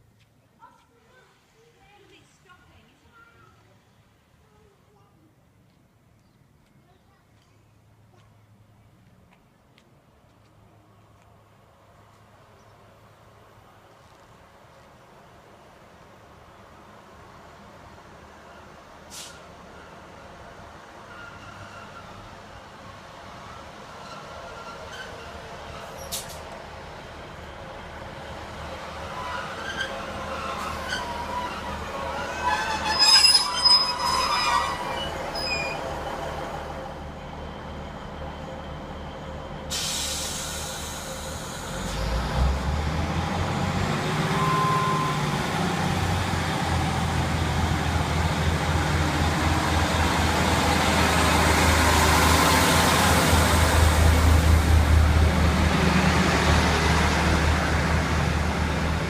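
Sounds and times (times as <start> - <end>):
train rumbling: 10.0 - 59.0
metallic brake squeal: 21.1 - 22.2, 24.0 - 26.3, 29.1 - 36.0, 44.3 - 45.2
sudden hiss: 39.7 - 42.1.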